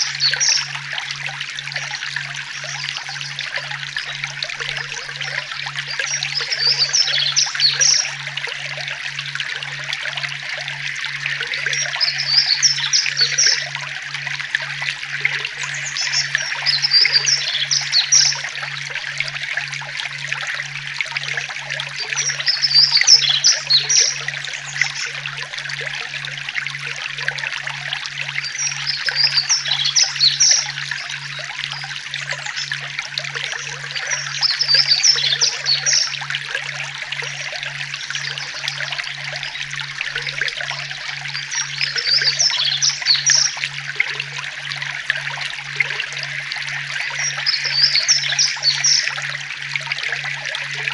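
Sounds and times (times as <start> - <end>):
songbird twittering: 0.0 - 0.7, 4.0 - 8.2, 11.5 - 13.9, 15.3 - 18.6, 22.0 - 25.2, 28.4 - 32.8, 33.5 - 36.2, 41.3 - 43.6, 47.0 - 49.3
stream trickling: 0.0 - 50.9.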